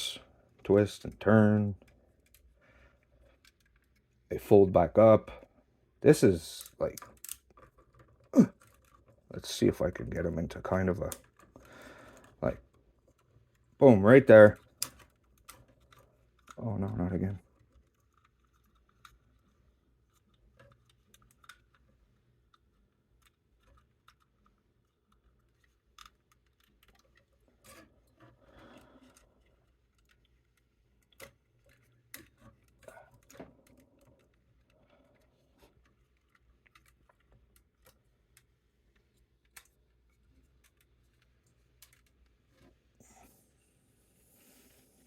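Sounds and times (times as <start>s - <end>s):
plastic parts clicking: 6.5s - 9.6s, 14.4s - 42.7s.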